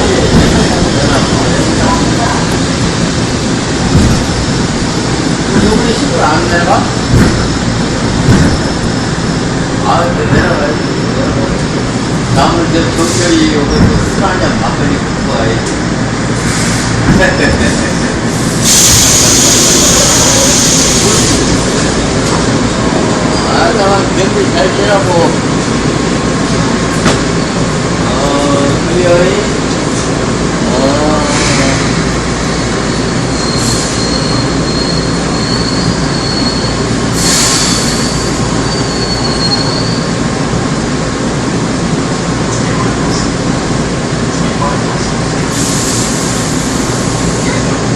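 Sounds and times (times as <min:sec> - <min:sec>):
electric train rumbling: 0:00.0 - 0:47.9
loud hiss: 0:16.3 - 0:21.8, 0:37.1 - 0:38.4, 0:45.5 - 0:47.5
high wheel squeal: 0:32.5 - 0:40.2.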